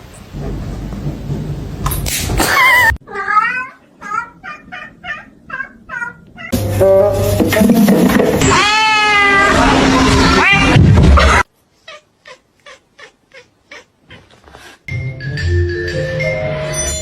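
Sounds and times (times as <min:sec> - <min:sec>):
cat meowing: 0:03.1 - 0:06.6, 0:08.5 - 0:14.4.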